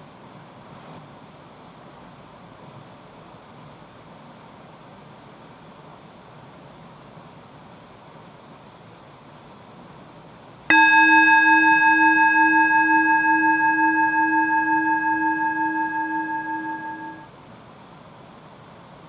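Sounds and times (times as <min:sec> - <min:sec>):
metal bowl bell ringing: 0:10.7 - 0:17.3.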